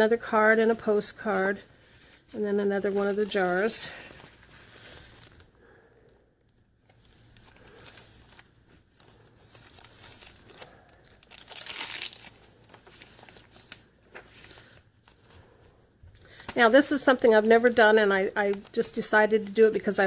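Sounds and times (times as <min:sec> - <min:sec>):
stiff paper pages rustling: 0:00.6 - 0:05.5, 0:06.8 - 0:20.0.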